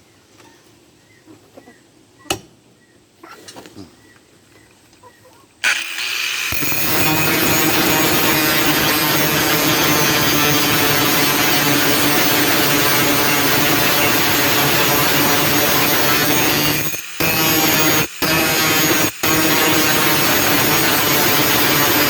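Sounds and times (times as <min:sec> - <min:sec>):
electric grinder grinding steel: 0:05.6 - 0:22.0.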